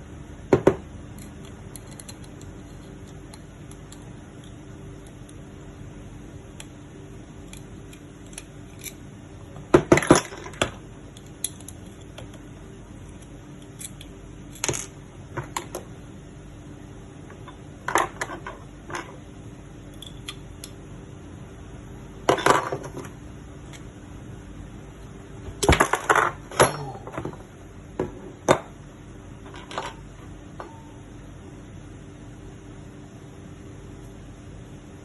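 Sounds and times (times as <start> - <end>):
steady low hum: 0.0 - 35.0
metal parts clicking and clattering: 1.1 - 5.4, 7.4 - 9.0, 9.8 - 12.4, 13.0 - 15.8.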